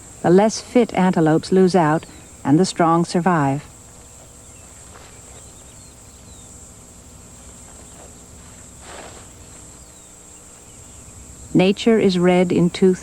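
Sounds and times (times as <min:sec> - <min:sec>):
faint chirps: 0:00.0 - 0:13.0
insects droning: 0:00.0 - 0:13.0
soft rustle: 0:03.8 - 0:05.8, 0:07.2 - 0:11.0.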